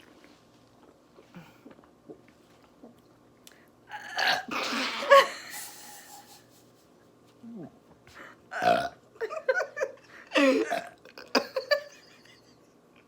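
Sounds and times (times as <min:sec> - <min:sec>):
loud raspy burp: 0:03.9 - 0:05.2, 0:08.5 - 0:09.0.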